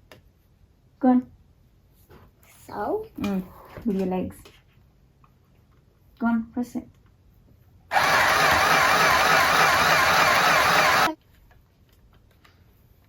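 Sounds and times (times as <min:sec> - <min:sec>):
sewing machine running: 0:07.9 - 0:11.1.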